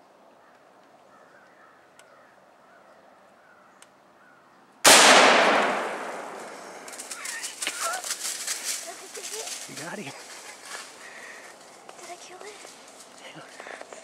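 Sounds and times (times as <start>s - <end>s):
loud gunshot with echo: 4.9s - 6.8s.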